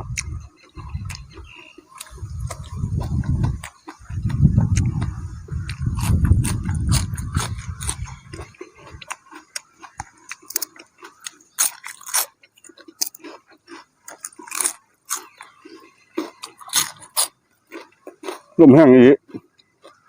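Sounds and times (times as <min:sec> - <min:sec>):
wind buffeting microphone: 0:00.0 - 0:09.2
person chewing crunchy food: 0:00.0 - 0:20.0.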